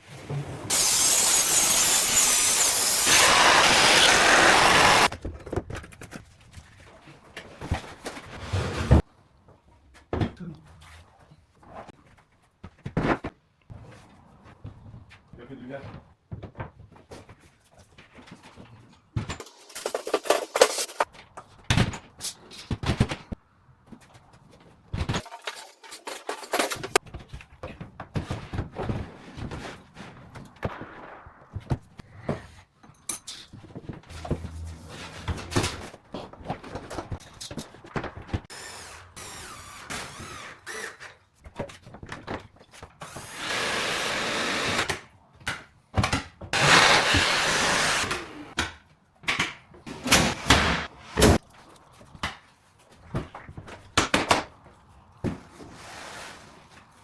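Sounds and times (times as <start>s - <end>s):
power tool running loudly: 0.7s - 5.1s, 43.2s - 44.9s
knocks and scraping clatter: 4.7s - 38.5s.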